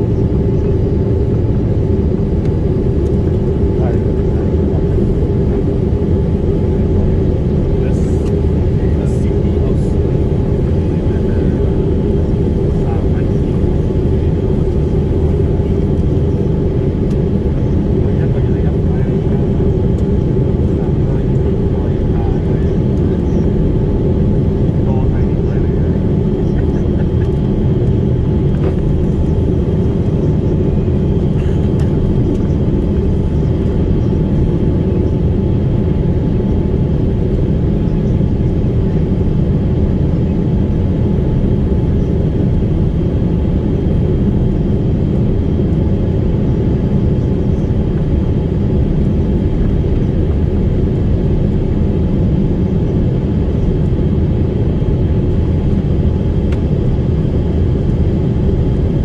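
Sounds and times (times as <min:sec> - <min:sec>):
airliner engine rumble: 0:00.0 - 0:59.0.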